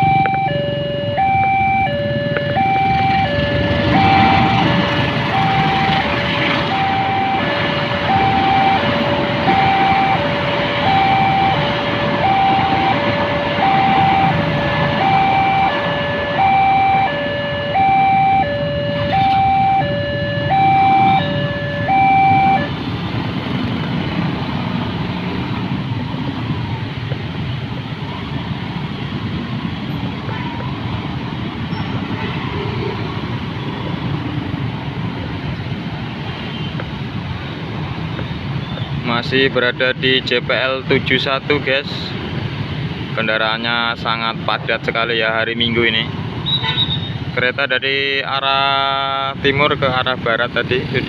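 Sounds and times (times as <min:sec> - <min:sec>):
two-tone crossing alarm: 0:00.0 - 0:22.8
busy road traffic: 0:00.0 - 0:51.0.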